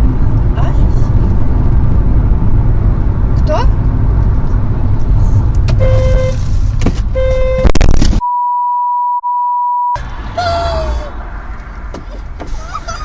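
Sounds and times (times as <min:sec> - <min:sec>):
car road noise: 0:00.0 - 0:08.2, 0:10.0 - 0:13.0
car horn honks: 0:05.7 - 0:06.5, 0:07.1 - 0:07.9
electronic beep tone: 0:07.2 - 0:10.0.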